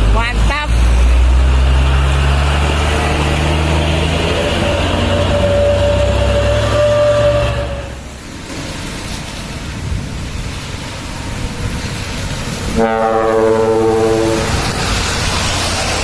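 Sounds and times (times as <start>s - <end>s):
dump truck engine and road noise: 0.0s - 16.0s
trumpet air horn blast: 4.7s - 8.1s, 12.7s - 14.7s.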